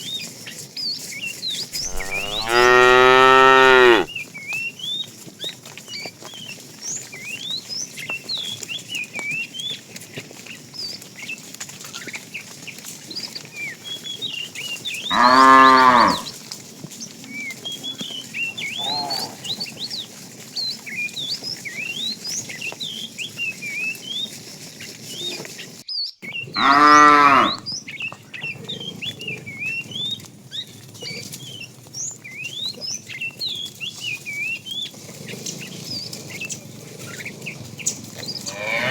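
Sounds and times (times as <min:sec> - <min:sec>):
cattle mooing: 0:01.8 - 0:04.1, 0:15.1 - 0:16.3, 0:18.8 - 0:19.5, 0:26.6 - 0:27.6, 0:38.5 - 0:38.9
small birds chirping: 0:13.1 - 0:16.4, 0:17.0 - 0:38.9.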